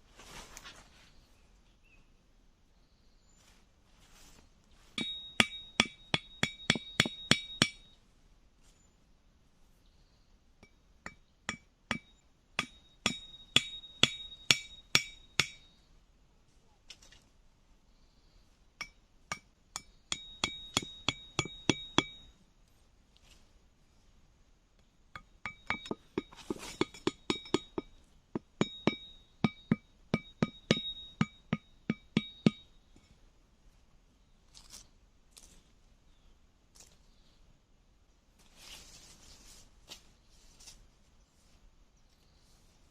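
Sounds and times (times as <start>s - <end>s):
metal tool strikes ringing: 5.0s - 8.0s, 10.6s - 15.8s, 18.8s - 22.4s, 25.2s - 32.9s.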